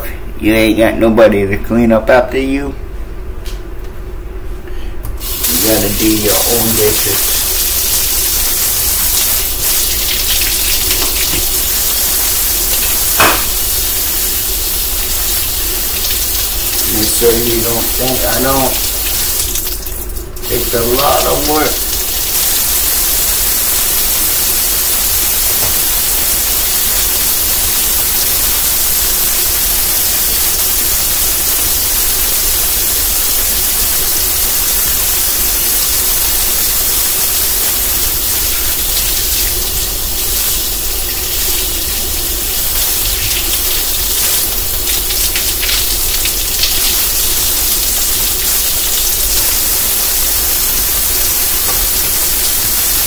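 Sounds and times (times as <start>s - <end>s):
faucet running into sink: 9.3s - 22.8s, 37.4s - 49.6s
dishes knocking and clinking: 13.2s - 13.6s.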